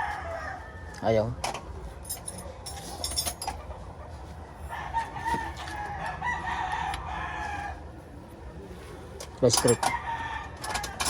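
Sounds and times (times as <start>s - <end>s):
rooster crowing: 0.0s - 1.1s, 4.6s - 7.9s, 9.8s - 11.0s.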